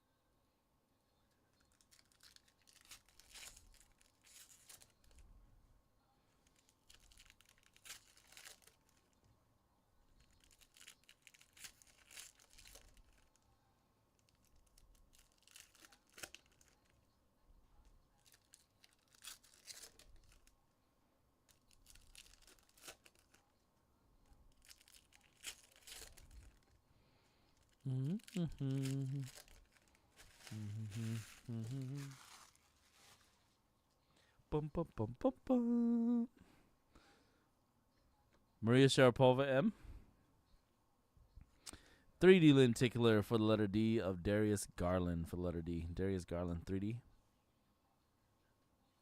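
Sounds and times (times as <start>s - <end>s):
wrappers tearing and crinkling: 1.5s - 5.2s, 6.4s - 9.2s, 10.2s - 13.4s, 14.2s - 17.0s, 18.1s - 20.6s, 21.4s - 23.6s, 24.5s - 26.8s, 27.5s - 33.5s.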